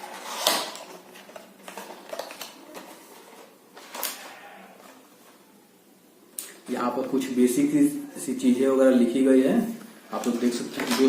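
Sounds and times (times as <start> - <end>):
packaging rustling: 0.0 - 5.4, 10.1 - 11.0.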